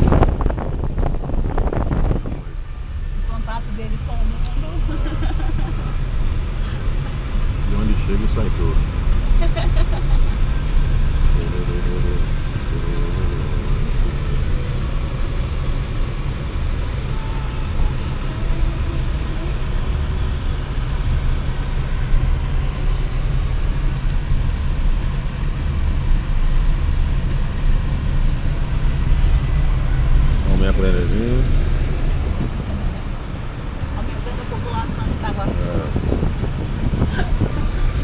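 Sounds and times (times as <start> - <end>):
car driving rumble: 0.0 - 38.0
faint voices: 11.3 - 13.9.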